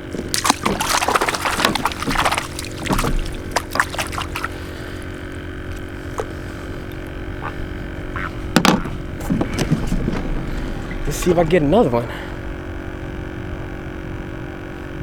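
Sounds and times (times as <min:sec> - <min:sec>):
water splashing and dripping: 0:00.0 - 0:04.8
steady low hum: 0:00.0 - 0:15.0.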